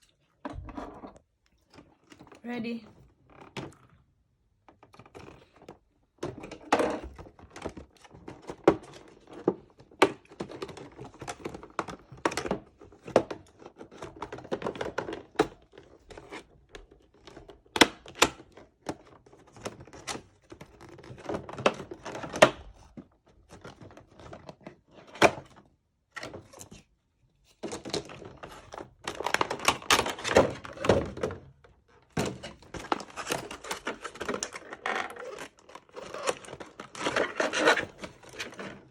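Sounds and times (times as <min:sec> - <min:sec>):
packaging rustling and scraping: 0:27.6 - 0:38.9.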